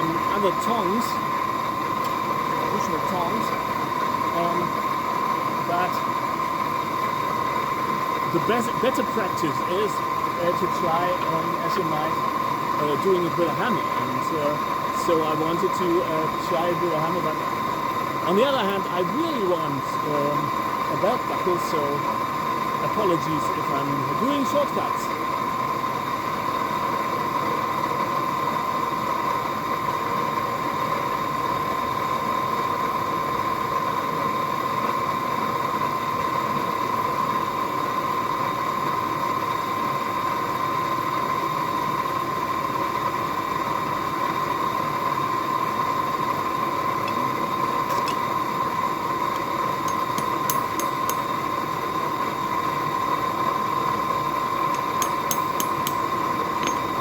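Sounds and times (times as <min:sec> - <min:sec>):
air blower whining: 0:00.0 - 0:07.4, 0:47.0 - 0:51.5, 0:53.7 - 0:57.0.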